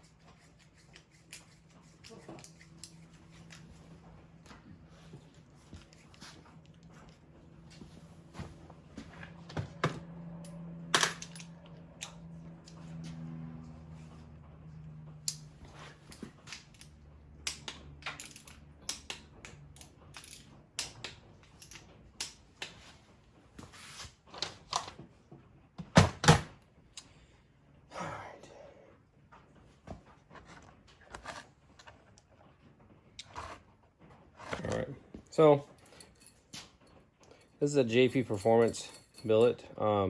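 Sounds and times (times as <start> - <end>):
metal tools clinking: 18.1 - 18.6, 19.8 - 20.6, 35.5 - 39.8.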